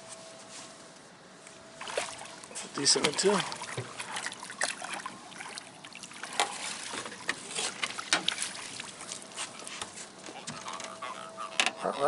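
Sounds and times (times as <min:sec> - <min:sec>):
water splashing and trickling: 0:01.6 - 0:12.0
knocks and clatter on boat: 0:06.3 - 0:08.7, 0:09.7 - 0:11.9.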